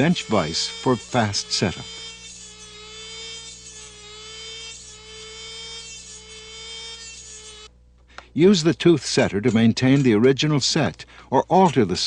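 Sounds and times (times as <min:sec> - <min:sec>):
small motor whining: 0:00.0 - 0:07.7.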